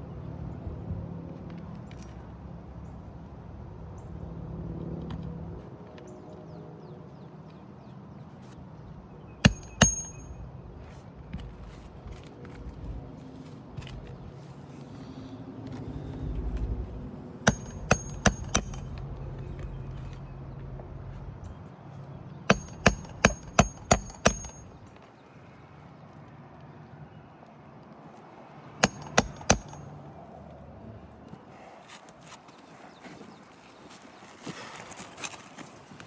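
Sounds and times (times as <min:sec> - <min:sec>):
hammer striking nails: 0:09.4 - 0:10.4, 0:17.4 - 0:20.2, 0:22.5 - 0:24.8, 0:28.8 - 0:29.9.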